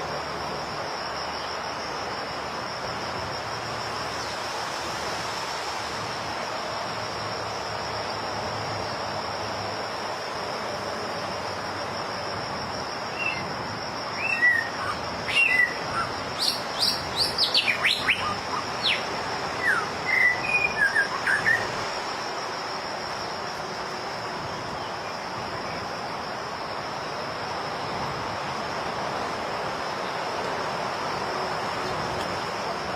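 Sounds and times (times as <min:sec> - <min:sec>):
high-pitched insect drone: 0:06.0 - 0:27.8
bird singing varied whistles: 0:14.2 - 0:14.7, 0:15.3 - 0:19.0, 0:19.6 - 0:21.7.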